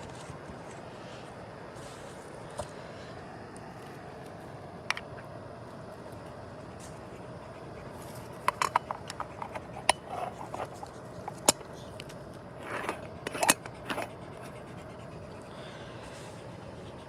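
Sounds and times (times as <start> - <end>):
steady hiss: 0.0 - 14.7
objects scraping: 8.0 - 11.7, 12.6 - 14.1
clicks and taps of objects: 8.4 - 10.0.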